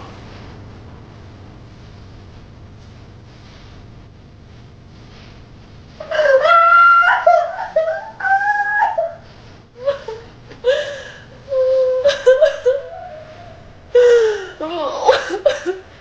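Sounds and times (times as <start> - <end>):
woman screaming in pain: 6.0 - 9.2.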